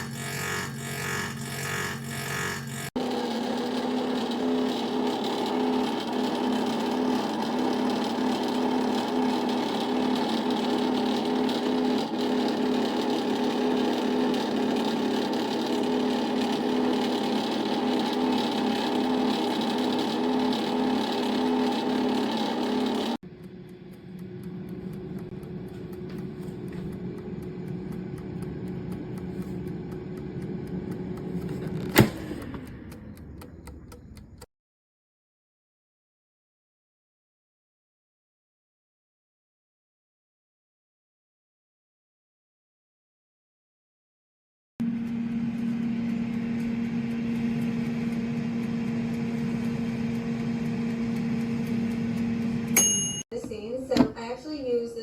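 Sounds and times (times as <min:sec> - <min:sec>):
air fryer fan humming: 0:00.0 - 0:34.5, 0:44.8 - 0:55.0
timer ticking: 0:04.9 - 0:31.5, 0:32.4 - 0:34.5, 0:44.8 - 0:54.2
timer click: 0:16.6 - 0:31.6, 0:32.2 - 0:34.5, 0:45.0 - 0:54.2.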